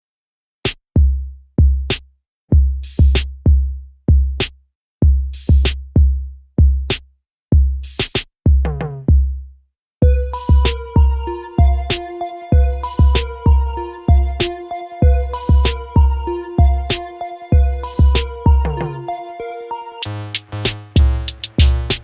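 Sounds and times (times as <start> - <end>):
drum-machine beat: 0.7 - 9.3, 10.0 - 19.1, 20.0 - 22.0
synth melody: 10.0 - 22.0.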